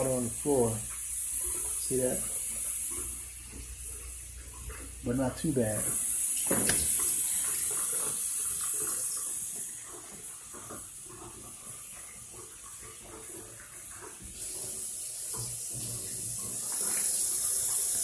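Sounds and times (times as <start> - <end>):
water running with hiss: 0.0 - 18.0.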